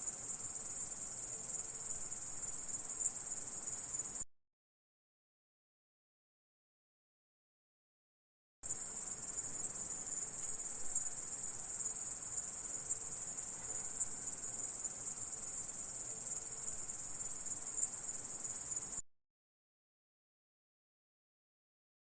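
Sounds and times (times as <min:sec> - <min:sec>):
grasshopper stridulating: 0:08.7 - 0:19.0.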